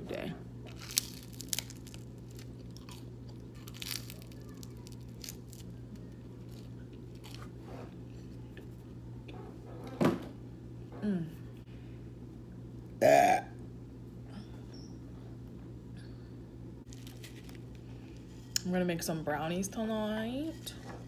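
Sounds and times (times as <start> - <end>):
steady low hum: 0.0 - 21.0
chewing and crunching: 0.6 - 8.8, 16.9 - 18.6.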